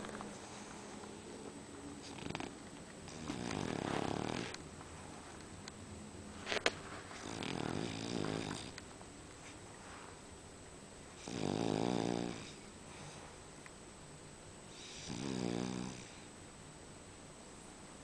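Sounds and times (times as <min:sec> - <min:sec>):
pet snoring: 0:02.0 - 0:04.6, 0:07.2 - 0:08.8, 0:11.2 - 0:13.2, 0:14.7 - 0:16.3.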